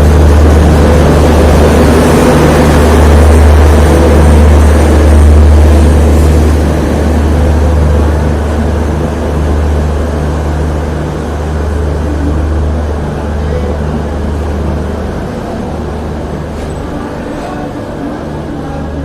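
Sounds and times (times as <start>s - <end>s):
train rumbling: 0.0s - 19.0s.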